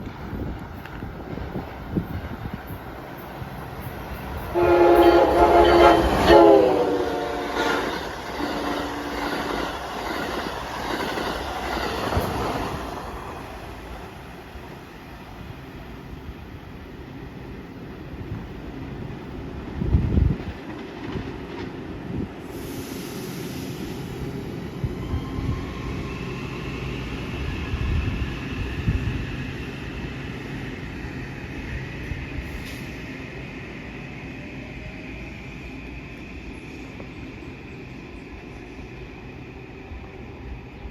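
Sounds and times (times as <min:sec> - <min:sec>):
rush of passing train: 0:00.0 - 0:40.9
train horn blasts: 0:04.4 - 0:09.2
train wheel clatter: 0:07.6 - 0:13.5.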